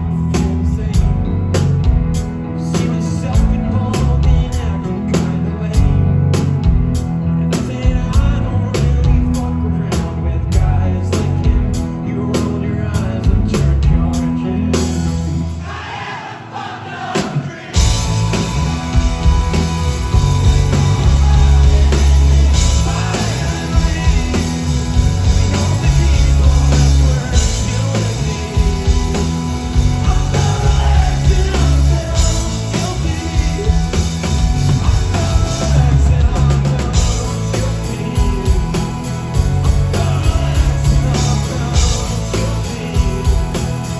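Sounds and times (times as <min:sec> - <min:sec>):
drums: 0:00.0 - 0:43.9
guitar: 0:00.0 - 0:43.9
live rock band playing: 0:00.0 - 0:43.9
crowd singing along: 0:14.2 - 0:43.9.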